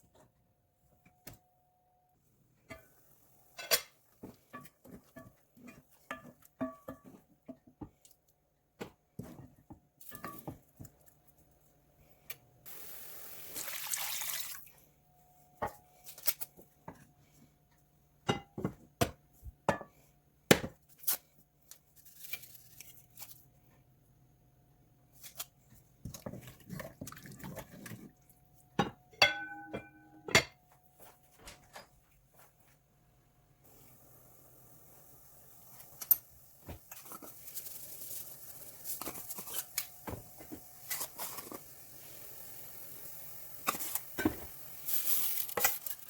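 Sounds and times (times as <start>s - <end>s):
dishes and utensils clinking: 3.6s - 7.2s, 28.8s - 30.6s.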